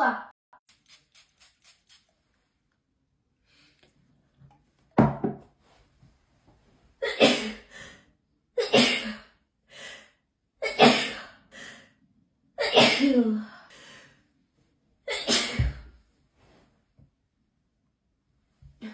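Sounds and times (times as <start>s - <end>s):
person sneezing: 15.1s - 15.8s.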